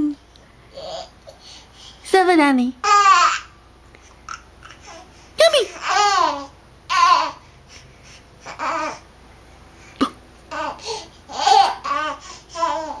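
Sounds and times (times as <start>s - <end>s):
baby laughing and babbling: 2.8s - 3.6s, 4.2s - 7.4s, 8.4s - 9.1s, 10.5s - 13.0s.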